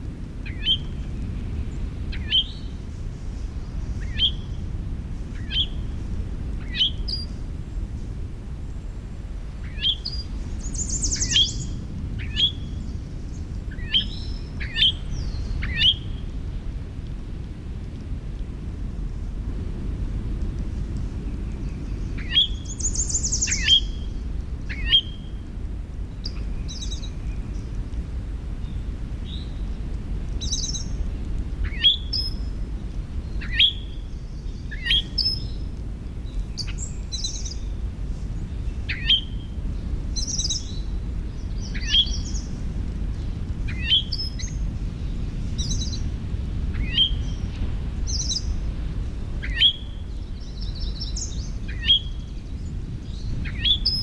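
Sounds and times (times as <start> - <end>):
low background rumble: 0.0 - 54.0
birds chirping and trilling: 3.4 - 4.5, 9.7 - 16.2, 21.5 - 25.2, 30.4 - 31.0, 33.2 - 35.6, 36.2 - 37.8, 38.4 - 54.0.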